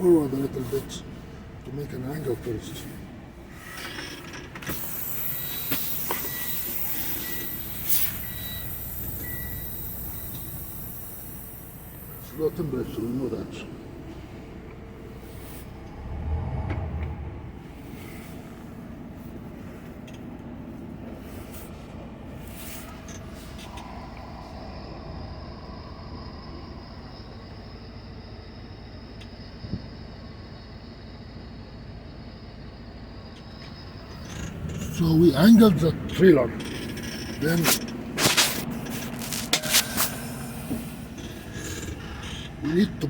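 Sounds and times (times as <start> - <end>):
diesel truck engine rumbling: 0.0 - 43.0
steady high whine: 4.6 - 16.0, 17.2 - 43.0
thin high beep: 5.1 - 12.3.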